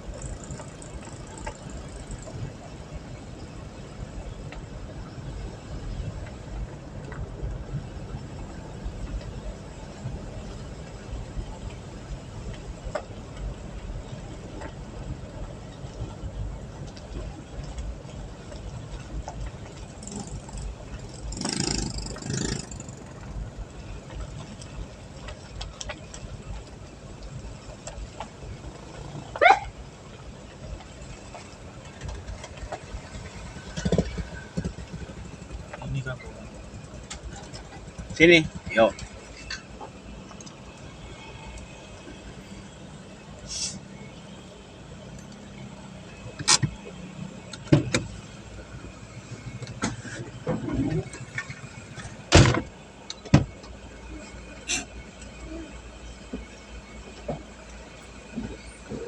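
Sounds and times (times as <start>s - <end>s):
car engine humming: 0.0s - 59.0s
low vehicle rumble: 0.0s - 59.0s
dog barking: 29.4s - 29.7s
sharp knocks and thumps: 31.9s - 35.9s.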